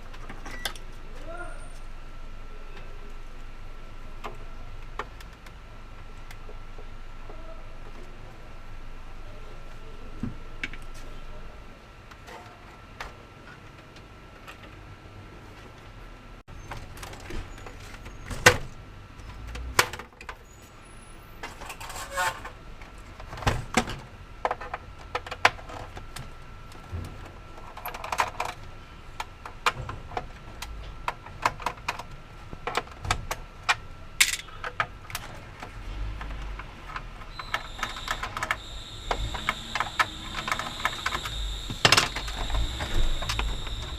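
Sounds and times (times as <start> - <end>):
small parts and tools rattling: 34.2 - 43.9
faint steady high tone: 37.3 - 43.9.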